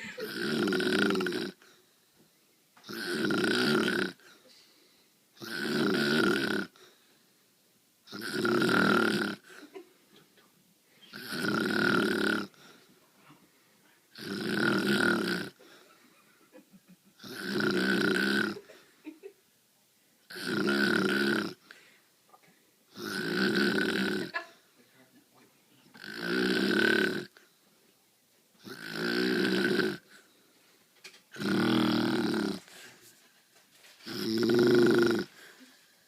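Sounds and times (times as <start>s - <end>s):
woman snoring: 0.0s - 1.6s, 2.9s - 4.2s, 5.4s - 6.8s, 8.1s - 9.5s, 11.1s - 12.6s, 14.2s - 15.6s, 17.2s - 18.7s, 20.3s - 21.6s, 22.9s - 24.4s, 26.0s - 27.4s, 28.6s - 30.0s, 31.4s - 32.7s, 34.1s - 35.3s
quiet breathing: 1.6s - 2.6s, 4.1s - 5.4s, 6.7s - 7.7s, 12.4s - 14.1s, 15.5s - 16.5s, 21.6s - 22.9s, 27.3s - 28.2s, 30.0s - 31.0s, 31.8s - 34.1s, 35.2s - 36.0s.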